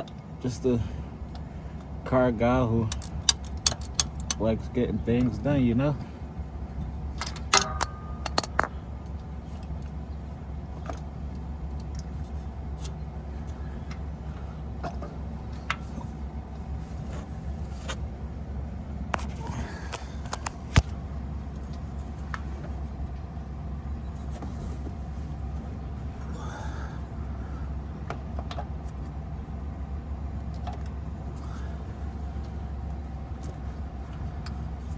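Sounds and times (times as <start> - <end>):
steady low hum: 0.0 - 34.9
hand tools clicking and clinking: 2.9 - 4.4, 7.2 - 8.8.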